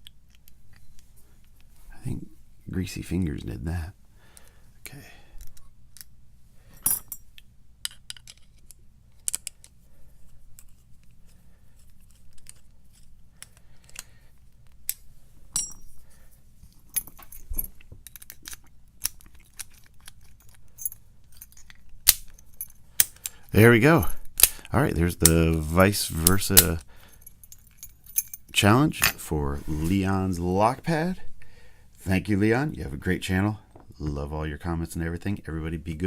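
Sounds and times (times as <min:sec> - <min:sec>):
padlock parts clicking: 0:18.0 - 0:23.4, 0:24.2 - 0:25.4.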